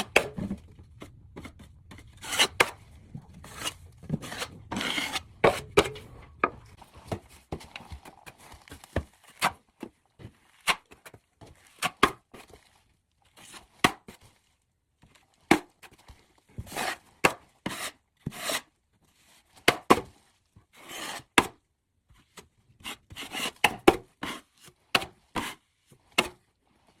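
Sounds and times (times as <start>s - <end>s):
tool scraping drywall: 0.0s - 9.5s, 16.6s - 18.7s, 20.8s - 21.5s, 22.8s - 26.4s.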